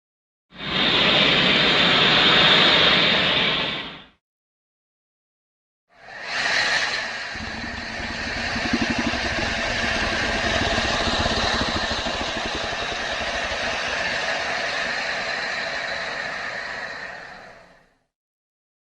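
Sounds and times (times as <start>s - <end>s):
low rattling creature growl: 7.4s - 15.0s.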